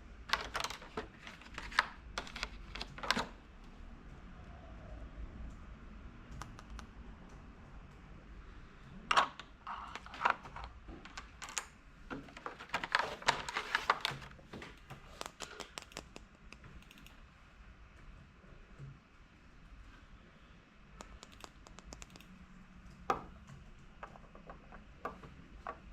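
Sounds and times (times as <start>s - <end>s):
plastic pieces clicking and tapping: 0.3s - 3.3s, 9.9s - 16.3s.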